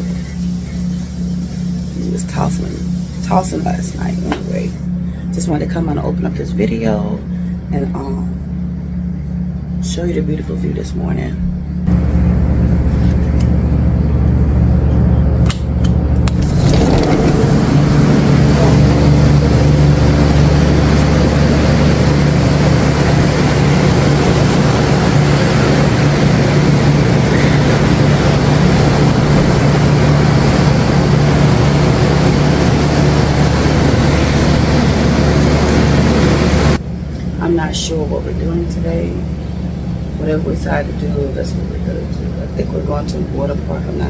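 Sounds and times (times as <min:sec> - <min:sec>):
steady low hum: 0:00.0 - 0:44.0
loud rushing noise: 0:16.3 - 0:36.8.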